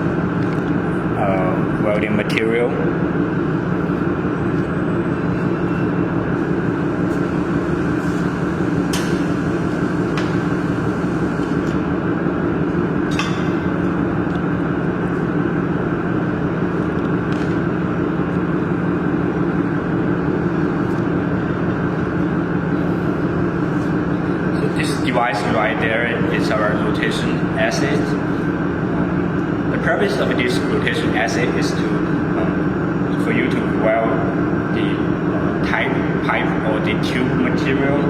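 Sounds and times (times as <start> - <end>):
steady mechanical hum: 0.0 - 38.0.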